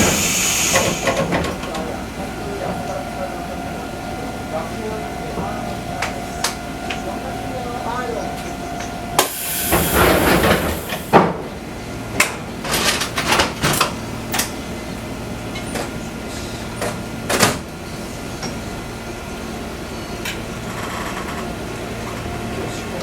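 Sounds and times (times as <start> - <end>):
air hiss: 0.0 - 1.3, 9.2 - 11.1
railcar doors knocking and clunking: 0.0 - 23.0.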